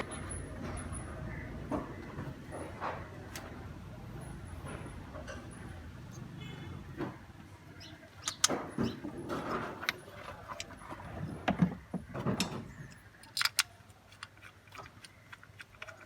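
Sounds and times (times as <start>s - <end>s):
clicks and knocks of parts: 8.1s - 16.0s.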